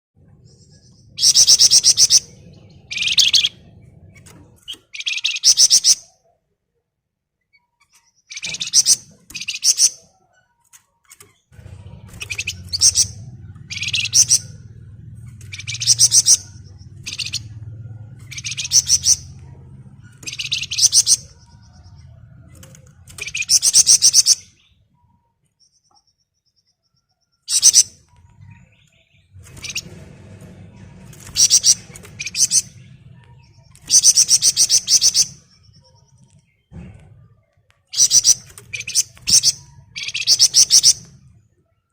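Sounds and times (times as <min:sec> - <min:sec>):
low steady hum: 0:11.5 - 0:25.4
bird rattling trill: 0:11.6 - 0:21.6, 0:22.6 - 0:24.5, 0:29.4 - 0:32.8, 0:33.7 - 0:35.5, 0:37.9 - 0:41.1.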